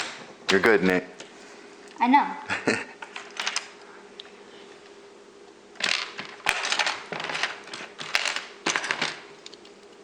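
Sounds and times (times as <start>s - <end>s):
plastic toy bricks clattering: 5.8s - 9.2s.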